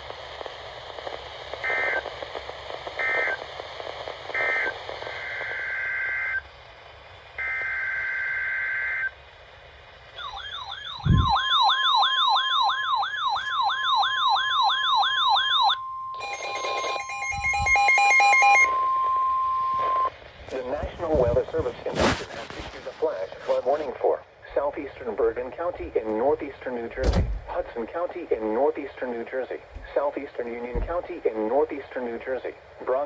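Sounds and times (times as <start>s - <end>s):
wavering siren-like alarm: 10.2s - 20.1s
steady high attention tone: 10.2s - 20.2s
rapid electronic beeps: 15.0s - 20.1s
digital data bursts: 16.2s - 18.8s.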